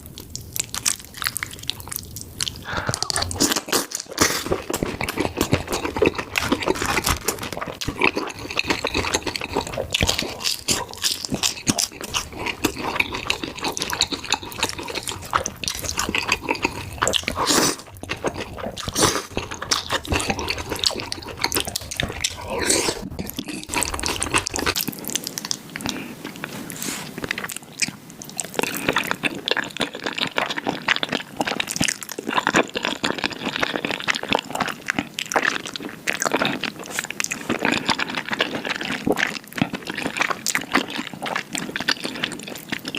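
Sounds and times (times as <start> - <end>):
low background noise: 0.0 - 42.9
wet chewing and slurping: 0.0 - 42.9.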